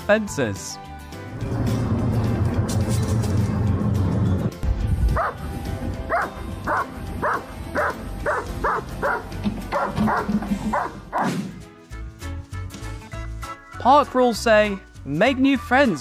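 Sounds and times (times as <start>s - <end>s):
dog barking: 5.2s - 5.4s, 6.1s - 11.4s.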